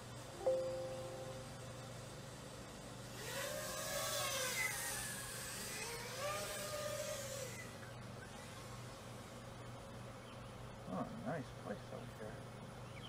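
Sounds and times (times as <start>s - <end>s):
quadcopter motors whining: 1.9s - 10.0s.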